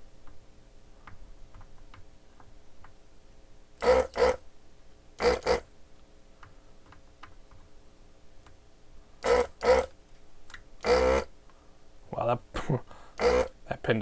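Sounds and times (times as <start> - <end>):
desoldering vacuum pump bursts: 3.8 - 4.4, 5.2 - 5.7, 9.2 - 10.0, 10.8 - 11.3, 13.1 - 13.7.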